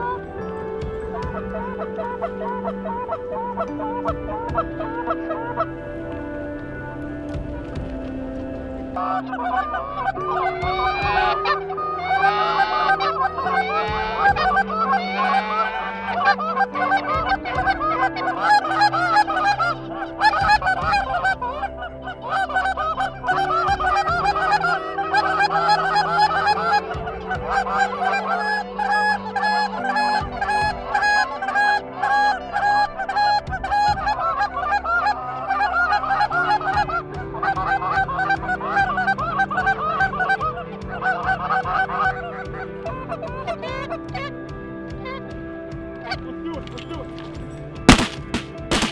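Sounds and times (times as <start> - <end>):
geese honking: 5.8 - 9.0.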